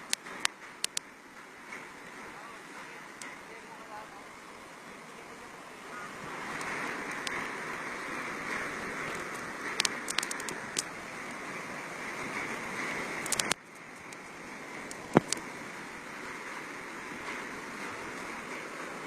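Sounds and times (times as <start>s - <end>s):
storm wind and water rushing: 0.0s - 19.0s
sharp clicks: 9.1s - 10.9s, 13.2s - 13.6s.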